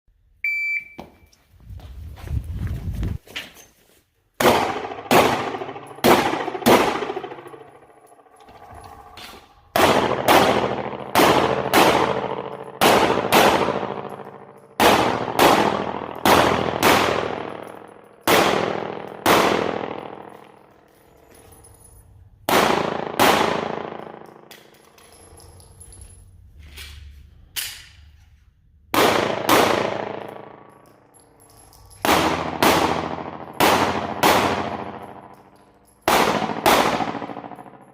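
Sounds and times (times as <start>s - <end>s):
pistol shots: 4.4s - 7.9s, 9.7s - 20.3s, 22.5s - 24.3s, 28.9s - 30.7s, 32.0s - 35.3s, 36.0s - 37.9s.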